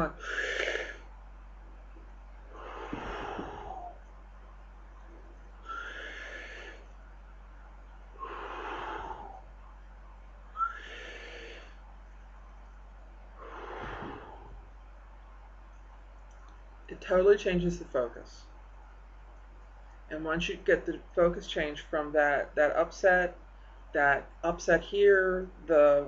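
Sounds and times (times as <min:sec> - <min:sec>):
person breathing deeply: 0:00.0 - 0:01.1, 0:02.5 - 0:04.0, 0:05.6 - 0:07.0, 0:08.1 - 0:09.6, 0:10.6 - 0:11.8, 0:13.4 - 0:14.7.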